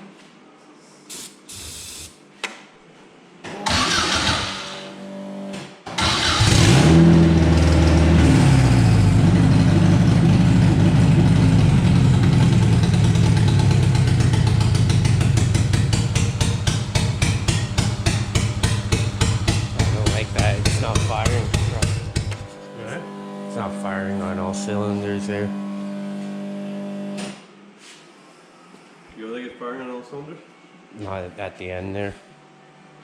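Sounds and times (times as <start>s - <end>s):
engine turning over and catching: 5.6s - 22.5s
engine running unevenly: 6.4s - 26.3s.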